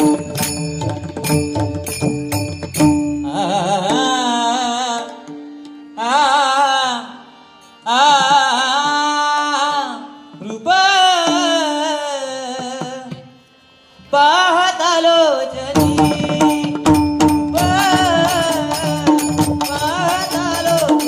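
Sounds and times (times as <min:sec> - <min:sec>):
man singing long vowel phrases: 0:06.0 - 0:13.1.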